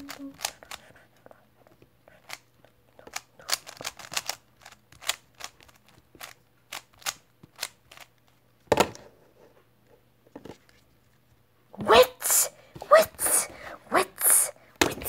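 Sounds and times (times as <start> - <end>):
plastic cube layers clacking: 0.0 - 0.8, 2.2 - 8.2.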